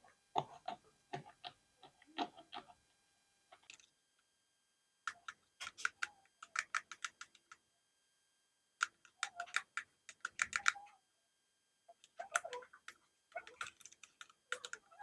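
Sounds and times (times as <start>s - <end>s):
small metal parts clicking: 13.4s - 14.9s.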